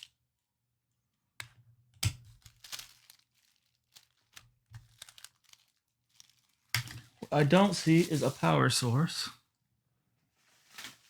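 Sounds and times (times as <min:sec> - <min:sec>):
plastic packaging crinkling: 0:02.3 - 0:08.5, 0:10.4 - 0:11.0.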